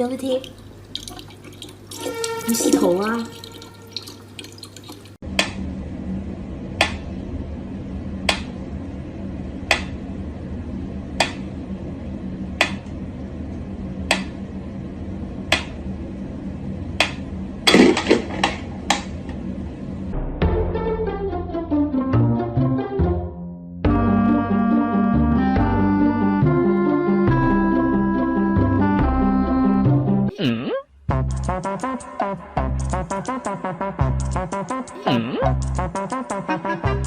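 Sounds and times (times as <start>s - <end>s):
low hum: 5.2s - 21.8s.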